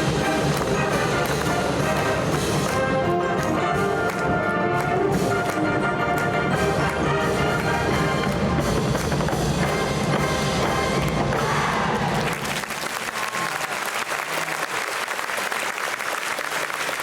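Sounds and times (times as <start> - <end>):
marching band brass and drums: 0.0 - 12.9
crowd applauding: 0.0 - 17.0.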